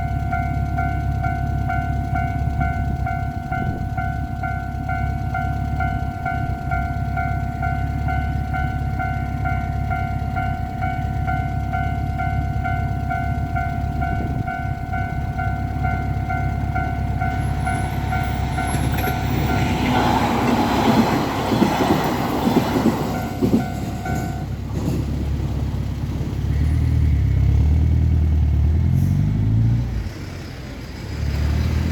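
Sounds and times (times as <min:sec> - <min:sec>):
level crossing alarm dinging: 0:00.0 - 0:20.6, 0:23.0 - 0:24.5
road vehicle engines rumbling: 0:00.0 - 0:31.9
train rushing past: 0:13.1 - 0:25.8.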